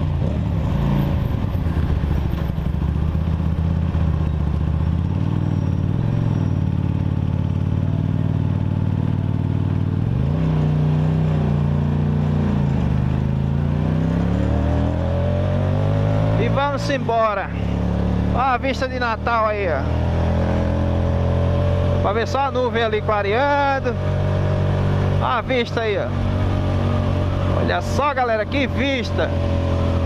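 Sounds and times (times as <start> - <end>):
motorcycle engine accelerating: 0.0 - 30.0.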